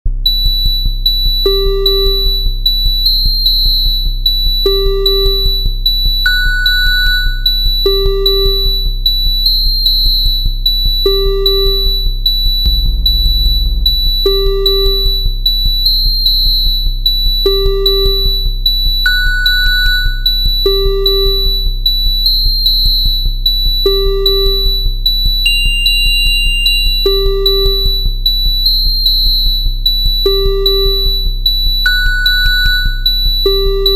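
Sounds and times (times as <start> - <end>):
ticking beat: 7.6 - 9.0, 10.8 - 15.9, 30.2 - 33.9
low hum: 11.1 - 16.2
high-pitched alarm tones: 12.6 - 15.3, 30.2 - 33.9
short pitched note: 12.7 - 15.3.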